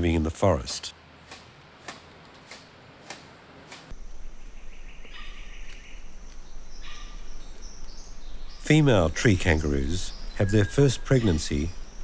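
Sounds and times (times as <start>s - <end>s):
bird chirps: 4.1s - 12.0s.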